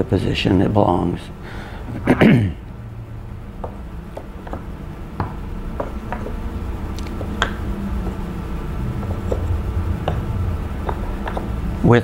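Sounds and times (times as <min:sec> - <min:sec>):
wooden puzzle pieces knocking: 0:03.6 - 0:08.3, 0:08.9 - 0:11.7.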